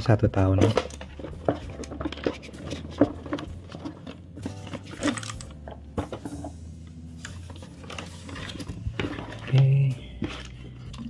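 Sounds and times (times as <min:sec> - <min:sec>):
packaging rustling: 0:00.6 - 0:06.6, 0:07.2 - 0:11.0.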